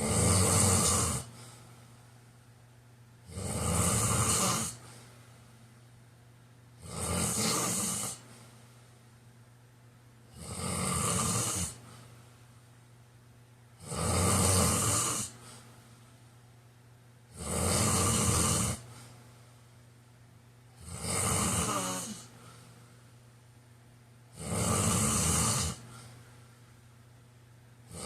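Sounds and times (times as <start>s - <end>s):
man snoring: 0.0s - 1.4s, 3.2s - 4.8s, 6.8s - 8.2s, 10.3s - 11.8s, 13.8s - 15.4s, 17.3s - 18.9s, 20.8s - 22.3s, 24.3s - 25.9s
quiet breathing: 0.0s - 2.5s, 3.4s - 6.0s, 7.2s - 9.3s, 11.0s - 12.8s, 14.4s - 16.5s, 17.6s - 20.0s, 20.7s - 23.5s, 24.2s - 27.0s.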